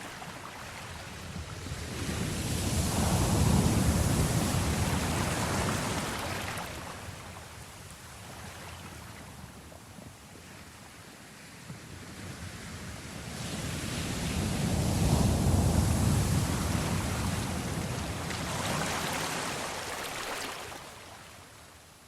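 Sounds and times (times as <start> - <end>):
waves breaking: 0.0 - 9.1, 13.5 - 21.5
hissing wash of surf: 1.5 - 6.8, 12.6 - 20.8.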